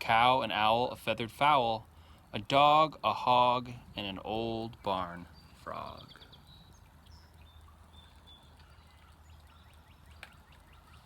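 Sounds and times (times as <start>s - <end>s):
bird chirps: 4.8s - 11.0s.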